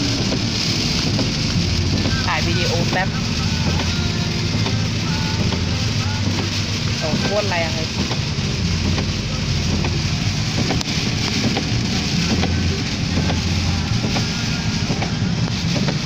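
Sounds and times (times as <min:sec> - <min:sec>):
heavy rain pouring: 0:00.0 - 0:16.0.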